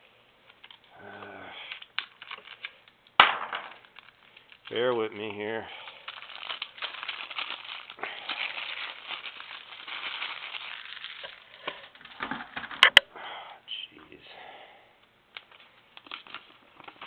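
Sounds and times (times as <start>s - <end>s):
wrapping rustling and crinkling: 0.0s - 12.6s, 15.3s - 17.0s.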